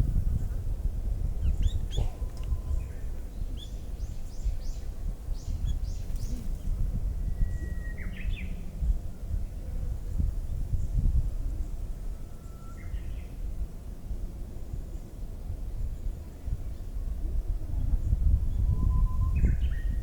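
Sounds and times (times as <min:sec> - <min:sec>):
small birds chirping: 0:01.4 - 0:06.9.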